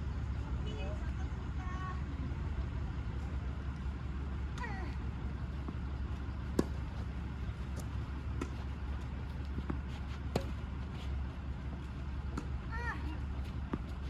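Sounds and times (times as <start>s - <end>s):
steady low hum: 0.0s - 14.0s
tennis ball struck by rackets: 6.4s - 8.7s, 9.5s - 10.7s.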